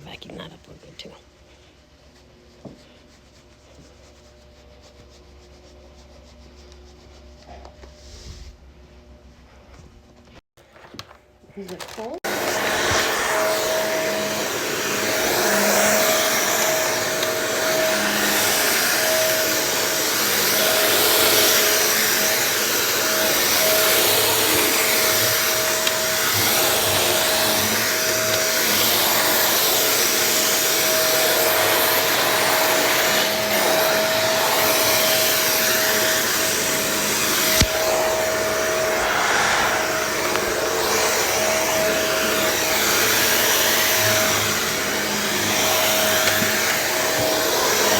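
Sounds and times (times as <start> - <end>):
vacuum cleaner running: 11.6 - 47.9.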